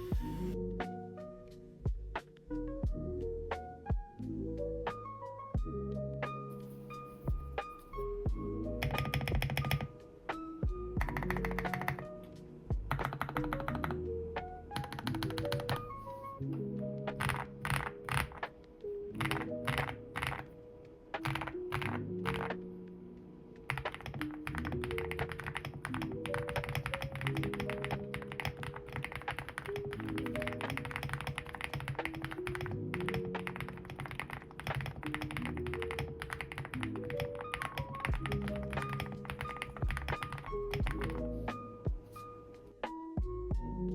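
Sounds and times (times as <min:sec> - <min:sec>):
background music: 0:00.0 - 0:43.9
typing on mechanical keyboard: 0:08.8 - 0:09.9, 0:11.0 - 0:12.1, 0:12.9 - 0:14.0, 0:14.8 - 0:15.9, 0:17.1 - 0:18.5, 0:19.1 - 0:20.5, 0:21.2 - 0:22.6, 0:23.7 - 0:41.2.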